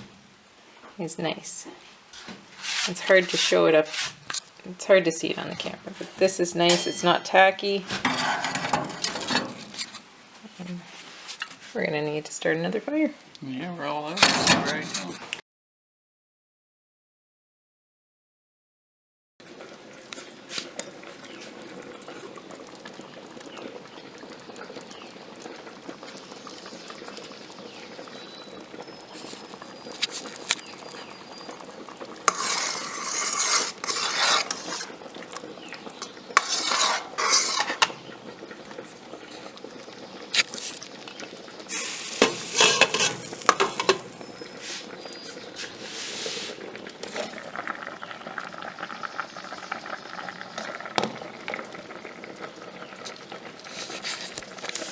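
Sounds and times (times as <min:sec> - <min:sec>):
rustling scraping noise: 0:02.1 - 0:04.5, 0:07.9 - 0:10.1, 0:10.8 - 0:11.9, 0:14.2 - 0:15.4, 0:32.2 - 0:35.0, 0:36.4 - 0:38.0, 0:41.7 - 0:45.0, 0:45.6 - 0:47.4, 0:53.7 - 0:54.9
metal utensils clinking: 0:06.6 - 0:09.9, 0:14.1 - 0:15.2, 0:41.8 - 0:44.2.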